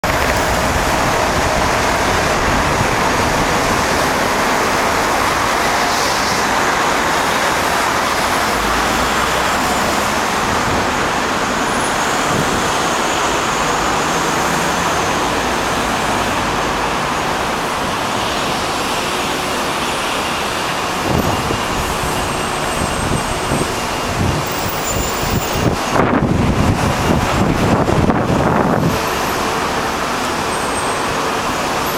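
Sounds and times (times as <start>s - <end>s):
wind buffeting microphone: 0.0s - 13.8s, 20.7s - 30.2s
road traffic roar: 0.0s - 31.9s.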